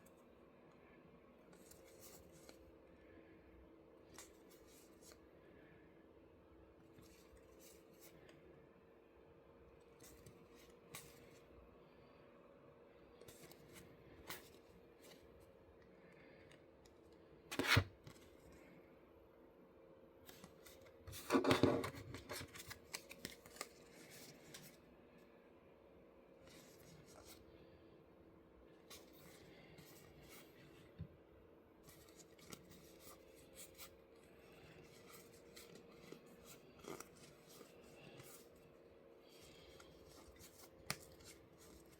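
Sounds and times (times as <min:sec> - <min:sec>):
faint steady hum: 0:00.0 - 0:41.9
cards and box rustling: 0:20.3 - 0:24.8, 0:31.9 - 0:38.6, 0:39.3 - 0:41.9.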